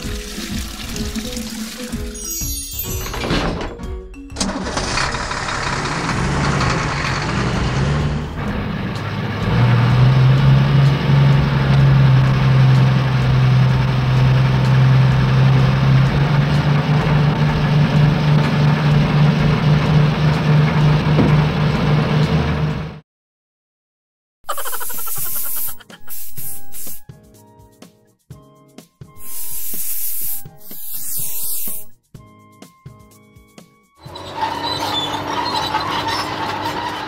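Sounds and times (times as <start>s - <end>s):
heavy vehicle engine idling: 4.5s - 9.1s.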